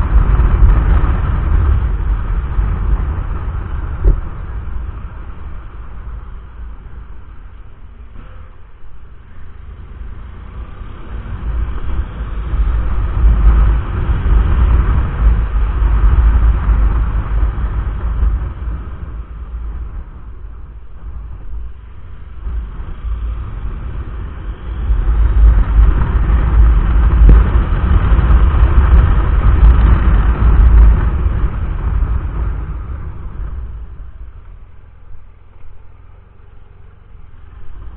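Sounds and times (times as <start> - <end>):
wind rumble on microphone: 0.0 - 37.9
motorcycle engine running: 9.7 - 37.9.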